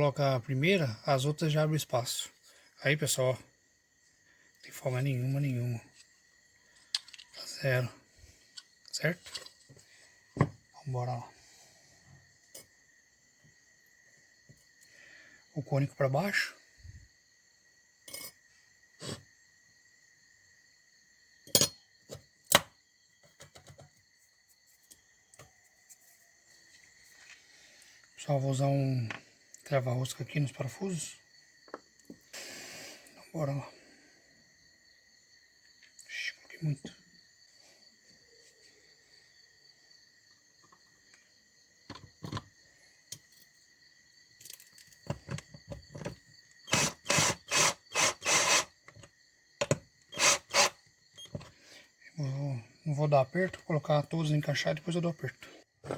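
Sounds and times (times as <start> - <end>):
metal parts clinking and knocking: 6.8 - 7.4, 8.5 - 9.8, 21.5 - 21.8
small metal parts clicking: 6.8 - 7.4
loud rasping strokes: 46.7 - 48.7, 50.1 - 50.8.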